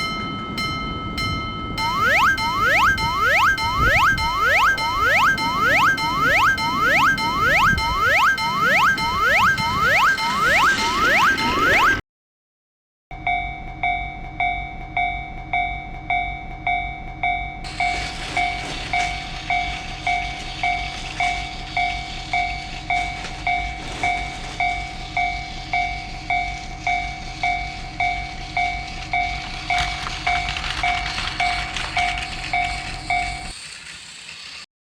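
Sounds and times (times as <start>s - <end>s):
railroad crossing bell ringing: 0.0s - 11.9s, 13.2s - 33.5s
passing train rumble: 13.3s - 34.6s.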